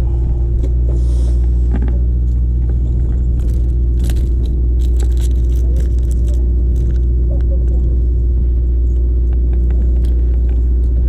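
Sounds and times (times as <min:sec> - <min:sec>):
boat engines droning: 0:00.0 - 0:11.0
light clicks and rattles: 0:01.7 - 0:07.8.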